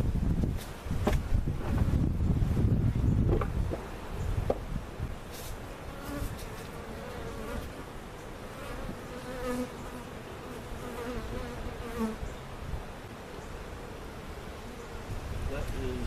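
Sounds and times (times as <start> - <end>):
bees buzzing: 5.7 - 15.5.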